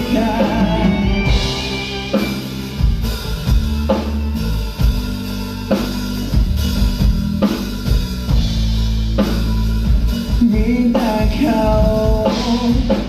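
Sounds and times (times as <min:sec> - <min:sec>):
bass drum and snare beat: 0:00.0 - 0:13.0
live band playing pop ballad: 0:00.0 - 0:13.0.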